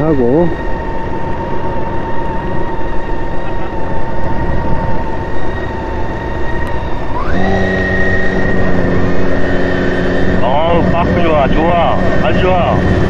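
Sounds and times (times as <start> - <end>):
motorcycle engine rumble: 0.0 - 13.0
wind on microphone: 0.0 - 13.0
high whistle: 4.2 - 9.4.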